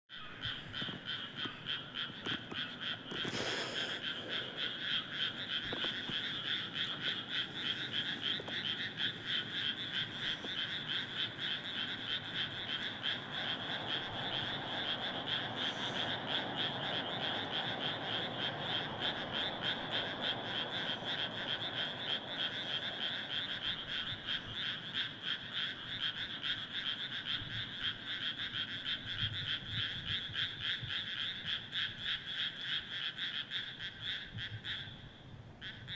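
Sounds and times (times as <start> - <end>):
chorus of frogs croaking: 0.1 - 35.9.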